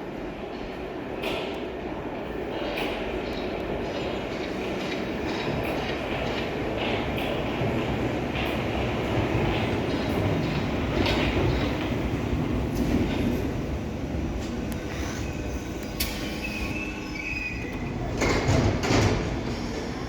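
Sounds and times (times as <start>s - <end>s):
train rumbling on rails: 0.0s - 20.0s
high wheel squeal: 14.9s - 18.0s.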